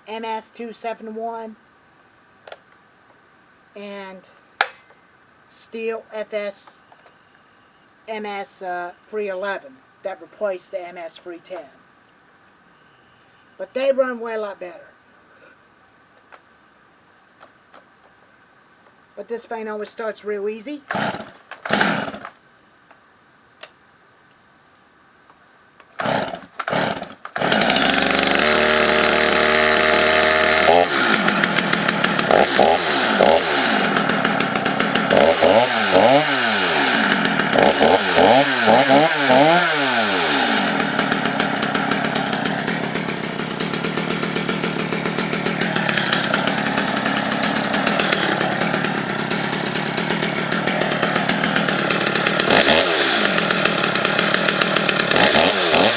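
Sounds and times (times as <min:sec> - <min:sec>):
chainsaw pull start: 0:20.8 - 0:22.4, 0:25.8 - 0:55.9
chainsaw revving and running: 0:20.9 - 0:22.4, 0:26.0 - 0:55.9.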